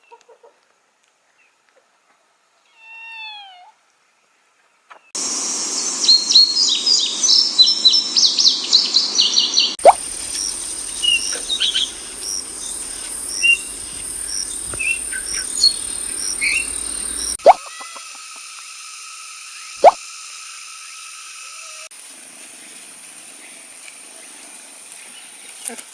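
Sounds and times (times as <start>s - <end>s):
small birds chirping: 5.6s - 17.6s
steady high hum: 9.9s - 17.4s.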